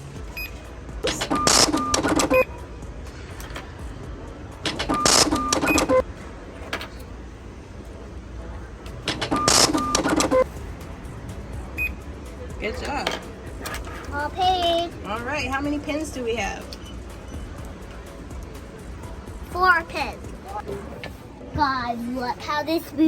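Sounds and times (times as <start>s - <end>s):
cash register clicks and beeps: 0.3s - 2.5s, 4.7s - 6.0s, 9.1s - 10.5s.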